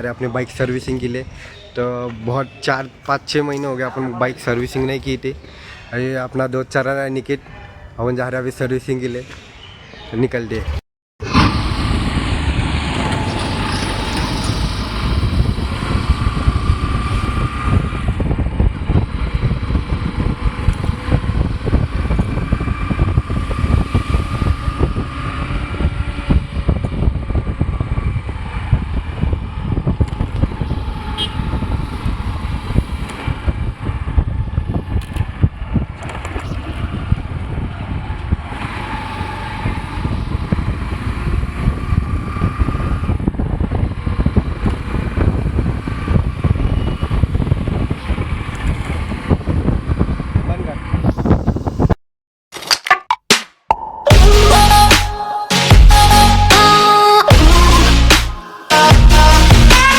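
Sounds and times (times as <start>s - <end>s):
road and engine noise: 0.0s - 52.0s, 54.1s - 59.9s
wind buffeting microphone: 11.4s - 52.0s.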